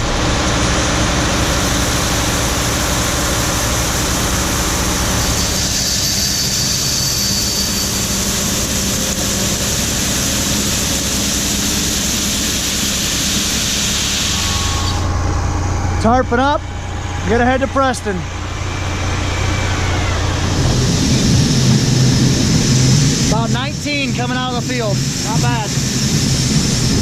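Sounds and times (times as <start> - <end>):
combine engine hum: 0.0 - 27.0
rush of grain pouring: 0.1 - 14.9.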